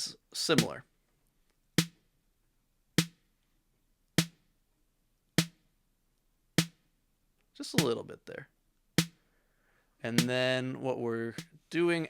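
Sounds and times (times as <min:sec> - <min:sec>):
drum machine snare hits: 0:00.6 - 0:00.8, 0:01.8 - 0:02.0, 0:03.0 - 0:03.2, 0:04.2 - 0:04.4, 0:05.4 - 0:05.6, 0:06.6 - 0:06.8, 0:09.0 - 0:09.2, 0:10.2 - 0:10.4.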